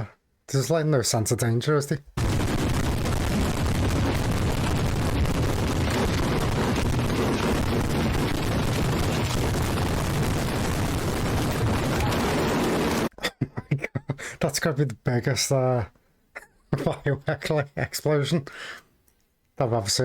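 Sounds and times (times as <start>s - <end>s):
fireworks bangs and crackle: 2.2s - 13.1s.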